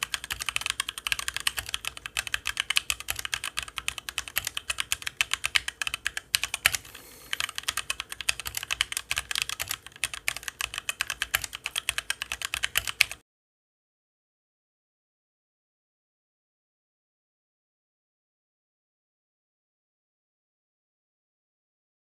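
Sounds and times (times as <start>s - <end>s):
keyboard typing clicks: 0.0s - 13.2s.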